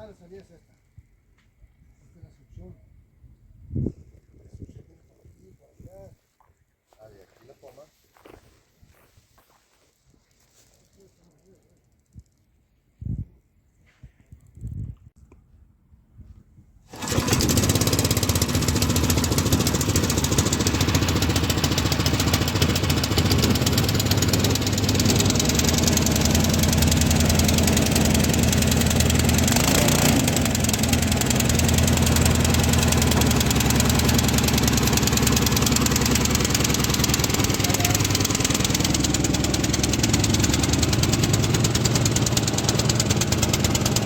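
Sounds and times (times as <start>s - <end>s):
water pump engine running: 16.9s - 44.0s.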